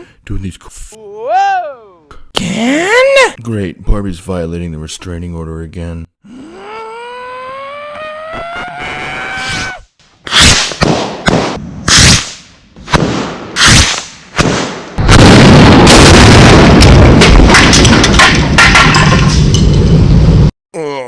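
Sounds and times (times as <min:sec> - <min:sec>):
cannon and rocket fire: 0:10.3 - 0:20.5
roar of explosions: 0:15.0 - 0:18.1.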